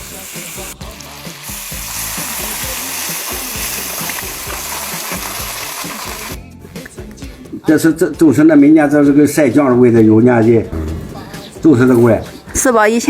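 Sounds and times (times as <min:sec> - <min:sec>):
pork sizzling in a wok: 0:00.0 - 0:06.4
background music: 0:00.0 - 0:13.0.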